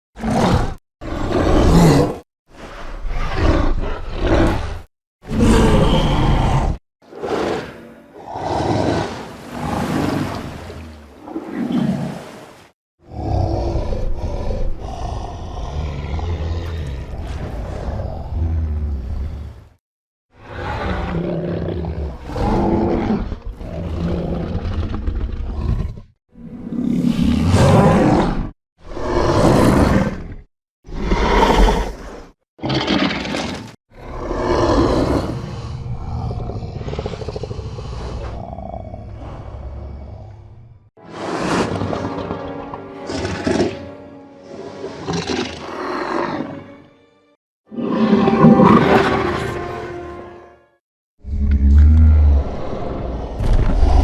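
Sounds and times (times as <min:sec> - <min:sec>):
rough growling roars: 0:13.0 - 0:40.9, 0:51.2 - 0:54.0.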